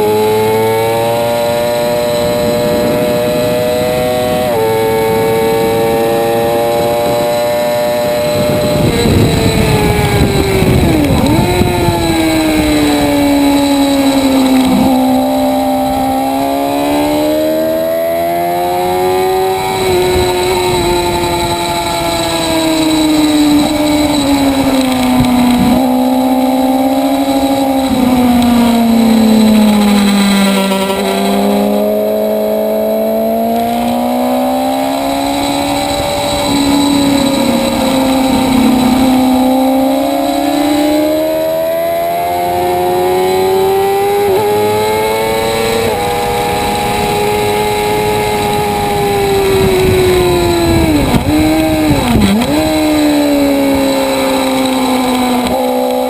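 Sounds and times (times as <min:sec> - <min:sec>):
motorcycle engine accelerating: 0:00.0 - 0:56.0.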